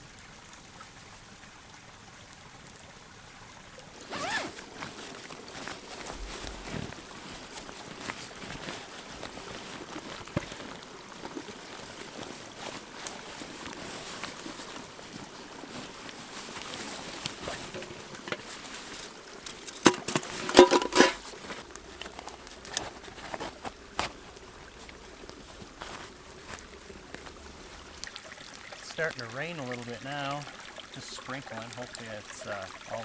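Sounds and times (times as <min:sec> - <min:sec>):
small clicks and crackles: 0:03.8 - 0:29.5
river water rushing: 0:03.8 - 0:33.0
sharp knocks and clinks: 0:19.5 - 0:21.3.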